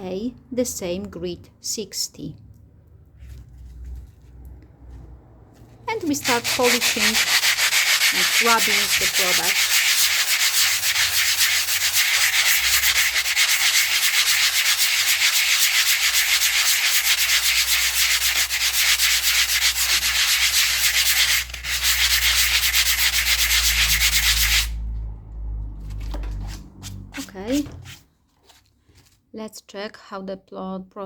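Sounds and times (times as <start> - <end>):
sanding blocks scraping together: 6.0 - 24.8.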